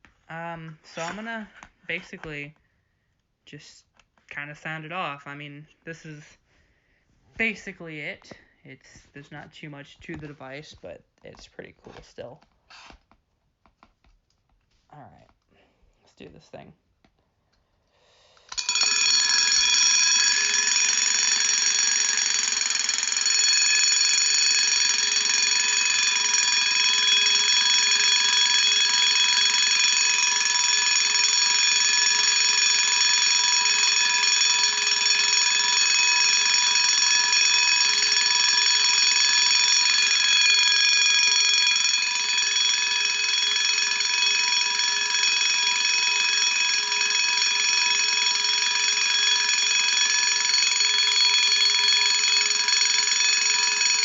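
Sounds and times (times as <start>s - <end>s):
alarm bell ringing: 0.9s - 1.3s, 18.5s - 54.0s.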